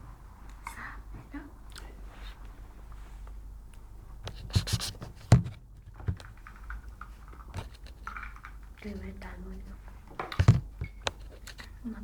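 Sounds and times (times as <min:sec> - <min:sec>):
scraping and rubbing: 0:04.3 - 0:06.2.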